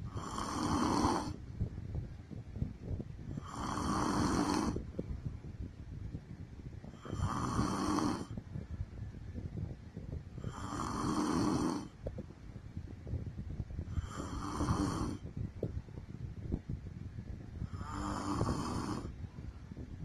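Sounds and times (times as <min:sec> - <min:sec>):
woman snoring: 0:00.0 - 0:01.4, 0:03.4 - 0:04.8, 0:07.0 - 0:08.3, 0:10.4 - 0:12.0, 0:13.9 - 0:15.2, 0:17.7 - 0:19.1.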